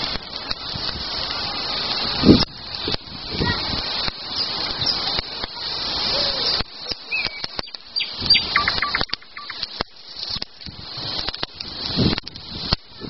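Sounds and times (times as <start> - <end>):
rustling hiss with sharp clicks: 0.0 - 13.0
small birds chirping: 4.2 - 5.3, 6.1 - 10.0.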